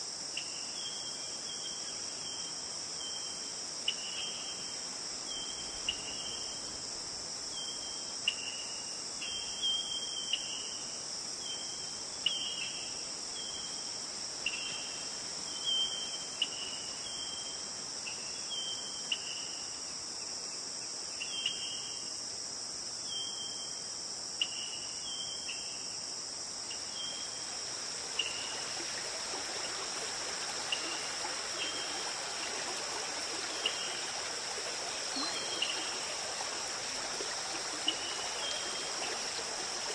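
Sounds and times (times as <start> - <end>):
high-pitched insect chorus: 0.0 - 39.9
insect chirping calls: 0.0 - 39.9
running water: 26.8 - 39.9.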